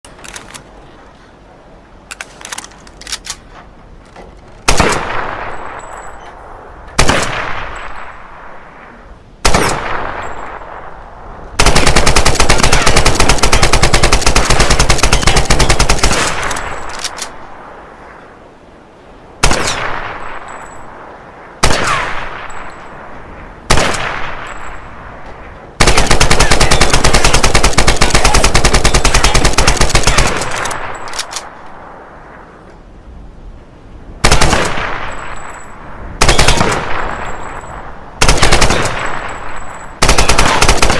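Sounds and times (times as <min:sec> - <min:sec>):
rifle single shots echoing: 0:36.2 - 0:40.9.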